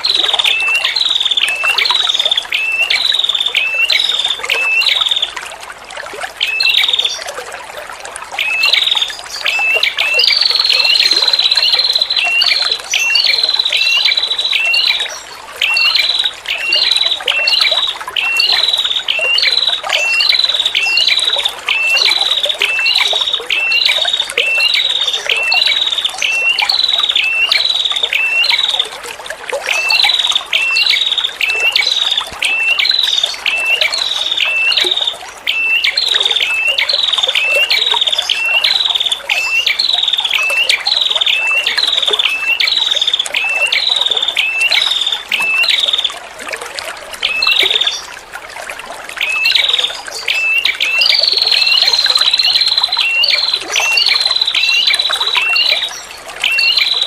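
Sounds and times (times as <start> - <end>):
trickling water: 0.0 - 57.0.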